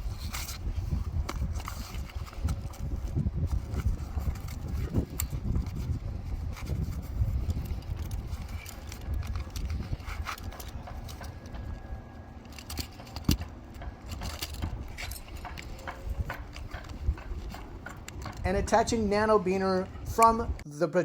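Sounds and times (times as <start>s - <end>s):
wind rumble on microphone: 0.0s - 20.6s
metallic clinks of carabiners: 12.4s - 18.5s.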